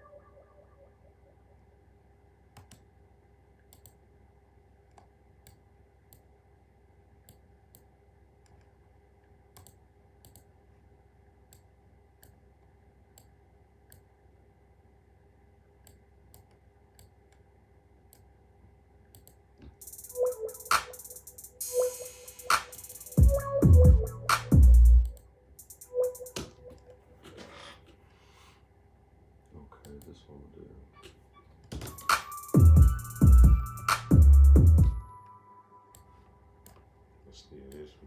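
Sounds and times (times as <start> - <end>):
drum machine beat: 19.8 - 26.7, 31.8 - 35.0.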